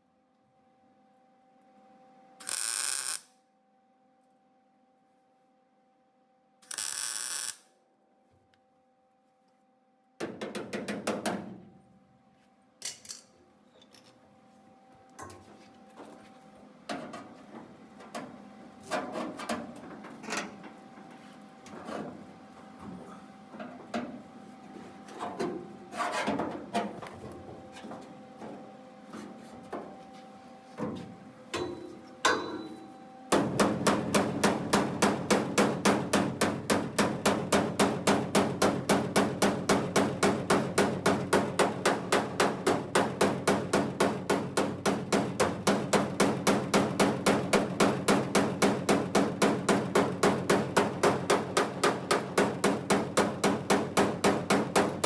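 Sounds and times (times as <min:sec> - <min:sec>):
hammer on sheet steel: 0:31.6 - 0:55.0.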